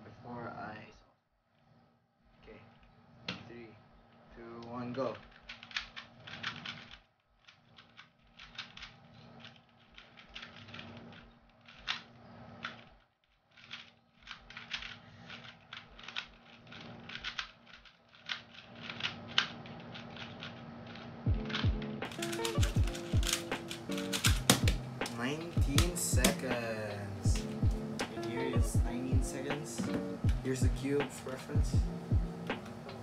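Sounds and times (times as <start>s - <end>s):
puzzle cube plastic layers clicking: 5.0s - 26.8s.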